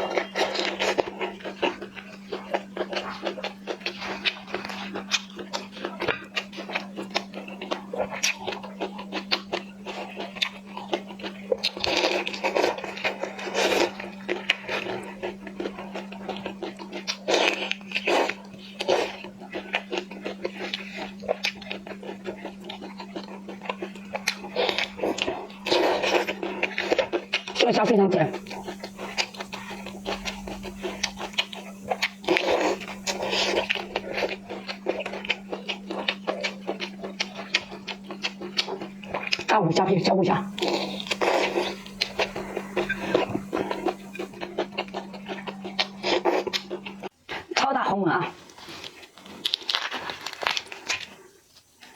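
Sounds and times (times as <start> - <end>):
steady low hum: 0.0 - 47.5
wet clicks and chewing: 0.0 - 51.9
prawn shell crackling: 28.3 - 39.4, 40.4 - 47.1, 48.4 - 51.9
wet mouth chewing clicks: 28.3 - 39.5, 40.4 - 47.4.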